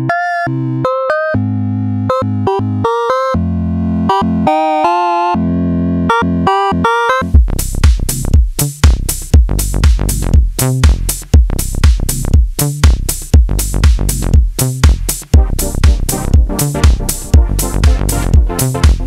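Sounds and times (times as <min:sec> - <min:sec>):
staccato synthesizer melody: 0:00.0 - 0:07.4, 0:15.4 - 0:19.0
held low synth chord: 0:00.5 - 0:07.4, 0:15.4 - 0:18.8
drum machine beat: 0:06.1 - 0:19.0.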